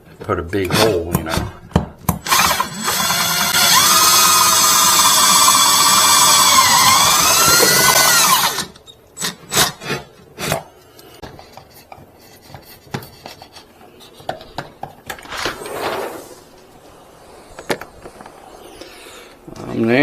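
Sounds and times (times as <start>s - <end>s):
power drill boring through wall: 2.2s - 10.0s.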